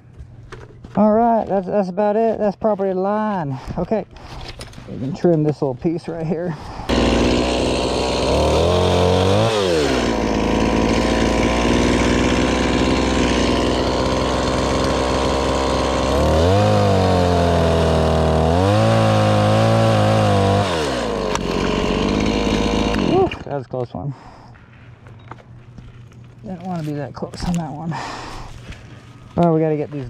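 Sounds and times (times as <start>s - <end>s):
chainsaw revving: 6.9s - 23.5s.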